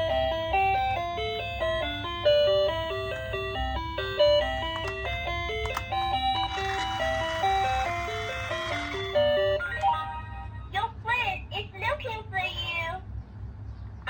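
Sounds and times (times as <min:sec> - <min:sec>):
steady low hum: 0:00.0 - 0:14.0
sharp clicks: 0:04.6 - 0:09.9.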